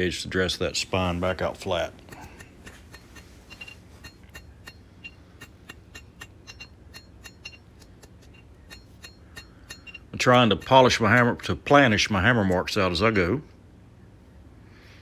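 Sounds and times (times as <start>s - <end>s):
hammer striking steel on anvil: 2.1s - 11.3s.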